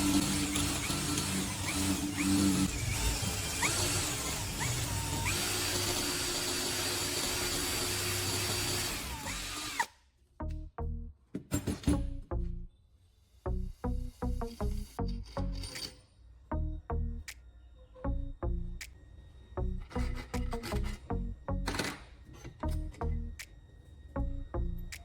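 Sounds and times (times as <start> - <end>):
electric drill whirring: 0.0 - 10.0
background music: 10.4 - 12.8, 13.5 - 15.9, 16.5 - 17.5, 18.1 - 25.0.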